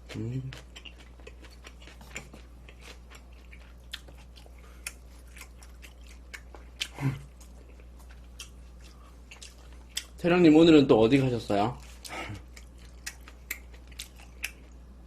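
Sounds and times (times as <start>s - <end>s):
chewing meat: 0.0s - 10.2s, 11.1s - 15.0s
person humming: 0.1s - 0.6s.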